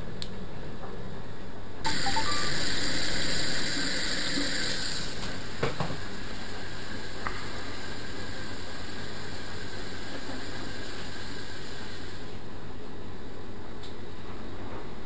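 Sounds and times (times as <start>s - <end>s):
washing machine water rushing in: 1.9s - 12.5s.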